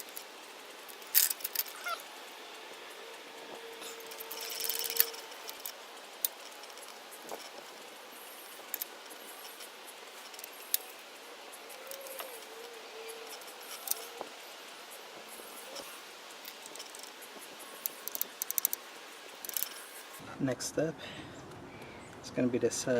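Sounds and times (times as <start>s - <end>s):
faint wavering tones: 0.0s - 20.2s
metallic clicks of hand tools: 0.9s - 2.0s, 11.7s - 14.4s, 15.3s - 18.8s, 19.4s - 20.2s.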